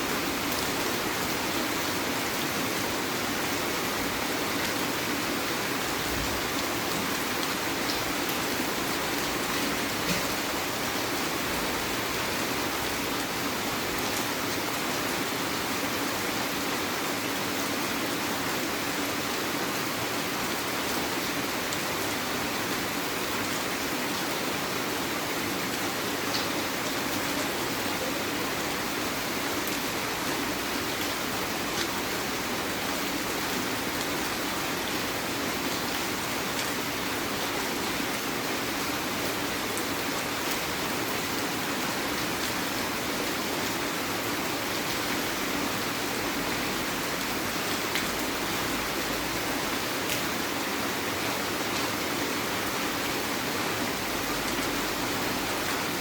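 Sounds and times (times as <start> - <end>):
heavy rain falling: 0.0 - 56.0.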